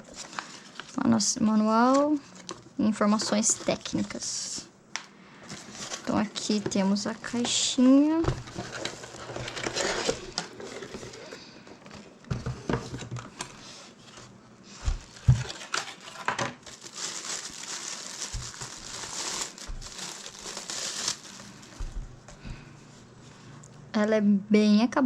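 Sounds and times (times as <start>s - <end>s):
plastic packaging crinkling: 14.9s - 22.2s.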